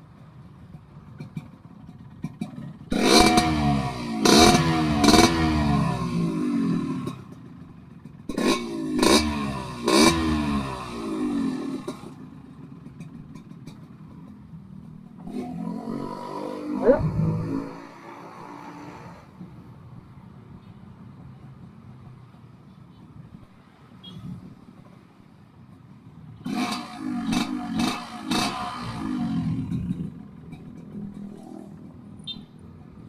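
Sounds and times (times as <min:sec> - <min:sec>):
motorcycle engine revving: 0:01.2 - 0:14.0, 0:14.7 - 0:19.4, 0:26.4 - 0:32.0.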